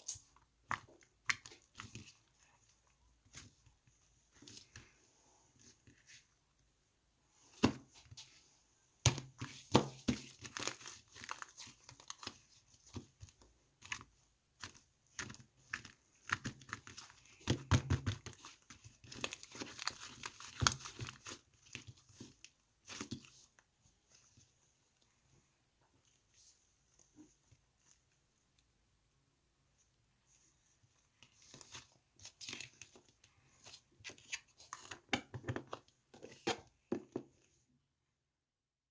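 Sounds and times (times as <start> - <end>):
crinkling and rustling: 7.4 - 28.4, 30.2 - 37.6.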